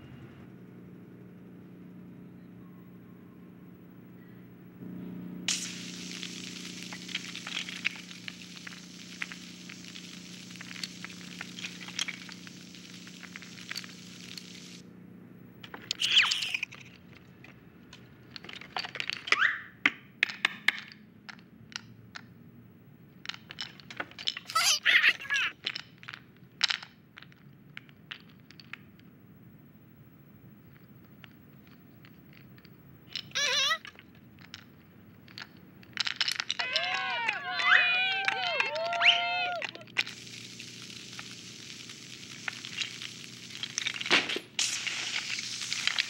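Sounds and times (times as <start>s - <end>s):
low hum: 0.0s - 18.4s
steady hiss: 4.8s - 14.9s, 28.2s - 46.0s
short squeaks sweeping in pitch: 15.9s - 16.7s, 33.2s - 33.9s.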